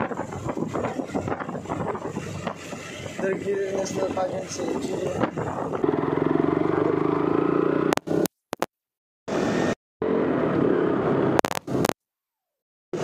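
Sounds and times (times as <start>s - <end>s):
motorcycle engine running: 4.0s - 8.3s.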